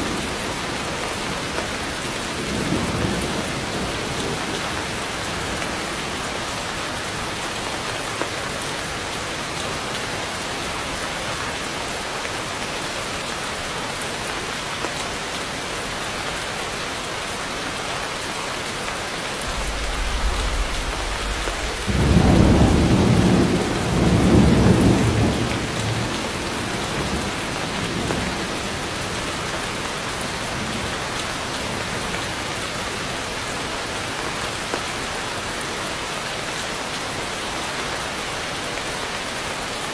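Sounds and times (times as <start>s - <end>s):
heavy rain falling: 0.0s - 39.9s
low roll of thunder: 19.4s - 27.2s.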